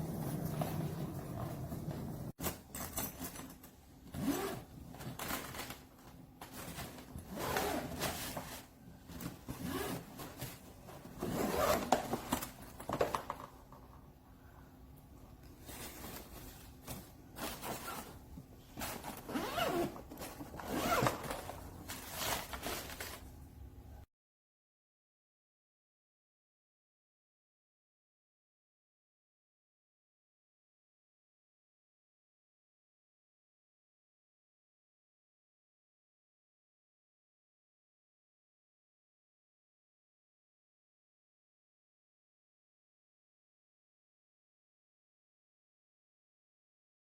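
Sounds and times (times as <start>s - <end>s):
suitcase zipper being zipped: 4.0s - 5.7s, 6.6s - 8.6s, 9.5s - 12.4s, 18.8s - 23.2s.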